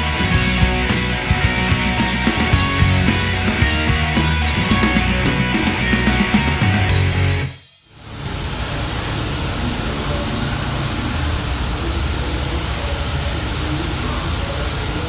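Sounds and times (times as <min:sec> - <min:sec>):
background music: 0:00.0 - 0:07.7.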